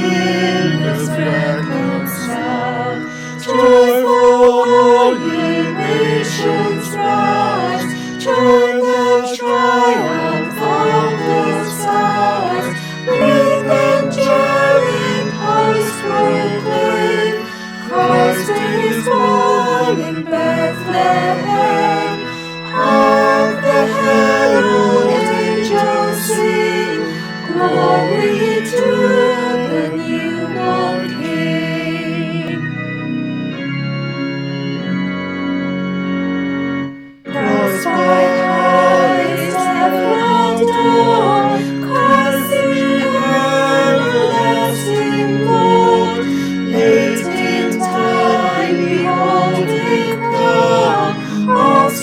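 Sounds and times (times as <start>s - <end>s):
organ music: 0.0s - 52.0s.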